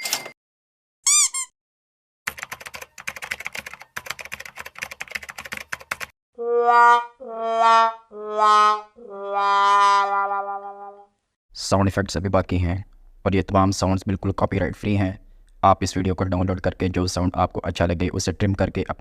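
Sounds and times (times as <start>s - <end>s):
rapid keyboard clicking: 2.3s - 6.1s.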